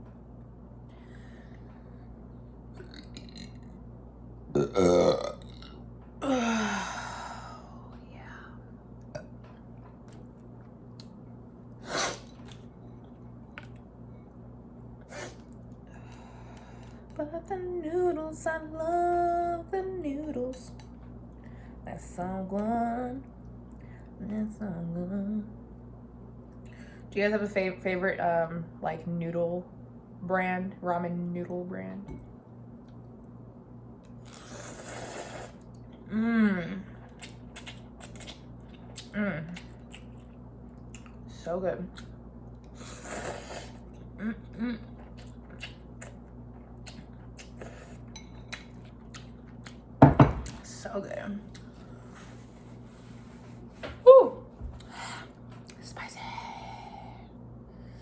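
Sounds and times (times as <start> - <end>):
person humming mmm: 4.5 - 5.4, 6.2 - 7.8, 34.6 - 36.9, 43.0 - 45.0
noodle slurp: 34.2 - 35.7, 42.8 - 43.8
wet chewing clicks: 37.1 - 41.2, 45.0 - 47.8, 48.4 - 49.8.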